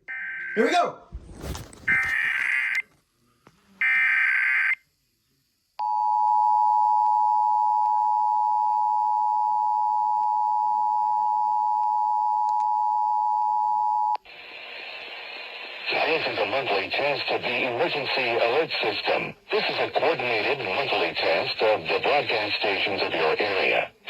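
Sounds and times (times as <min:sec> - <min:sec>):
harsh warbling data tones: 0:01.4 - 0:02.8.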